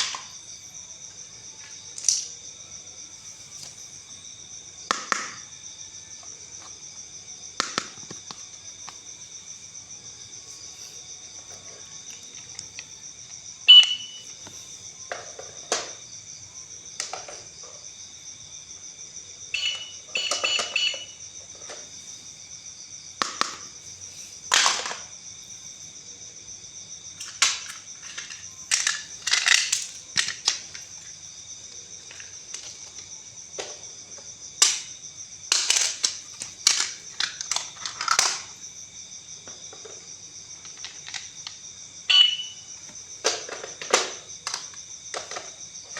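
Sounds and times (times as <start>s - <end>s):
plastic toys clicking and clattering: 0.0s - 0.3s, 1.6s - 2.4s, 11.4s - 12.9s, 15.1s - 16.0s, 17.0s - 17.8s, 20.2s - 21.9s, 24.4s - 25.1s, 27.2s - 31.2s, 32.0s - 34.9s, 35.5s - 38.6s, 39.4s - 41.6s, 43.2s - 45.9s.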